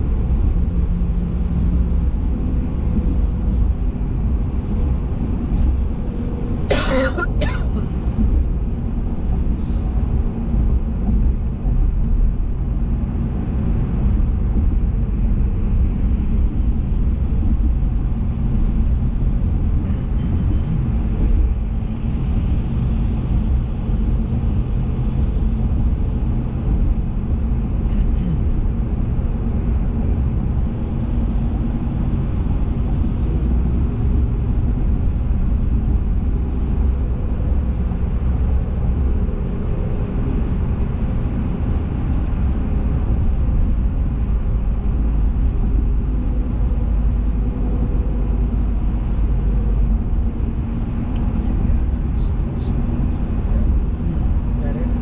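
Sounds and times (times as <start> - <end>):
vehicle engine and road rumble: 0.0 - 55.0.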